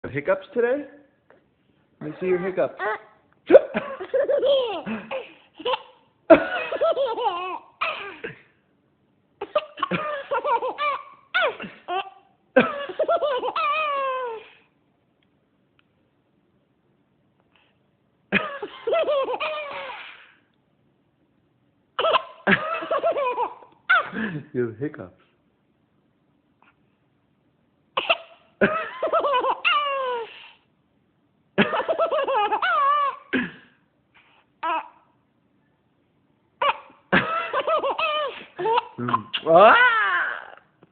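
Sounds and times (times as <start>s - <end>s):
child laughing with hiccups: 2.8s - 8.4s, 9.4s - 14.6s, 18.3s - 20.3s, 22.0s - 24.3s, 28.0s - 30.4s, 31.6s - 33.5s, 36.6s - 40.6s
child hiccuping: 28.0s - 28.4s, 38.1s - 39.6s.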